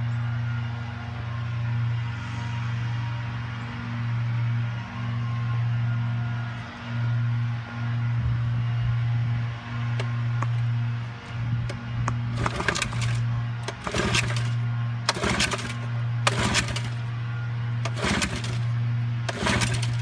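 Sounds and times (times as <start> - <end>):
recoil starter rattling crank: 10.0 - 20.0.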